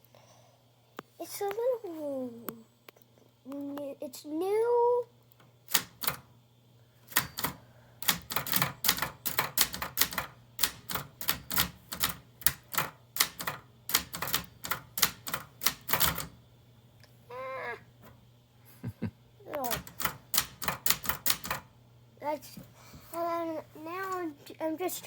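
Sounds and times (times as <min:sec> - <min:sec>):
typewriter key strikes: 0:05.7 - 0:06.3, 0:07.1 - 0:16.4, 0:19.6 - 0:21.7.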